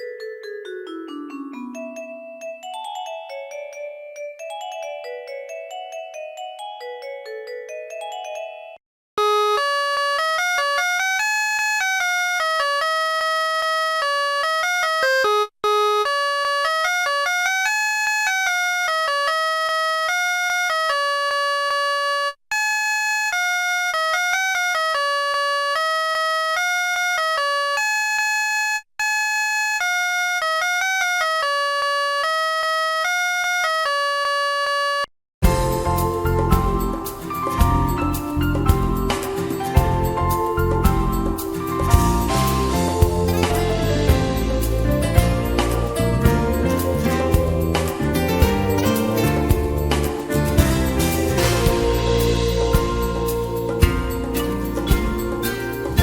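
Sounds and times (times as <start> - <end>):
phone ringtone melody: 0.0 - 13.4, 35.4 - 56.0.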